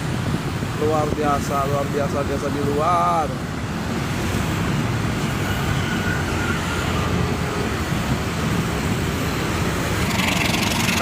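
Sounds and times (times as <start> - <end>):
train rumbling on rails: 3.2 - 11.0.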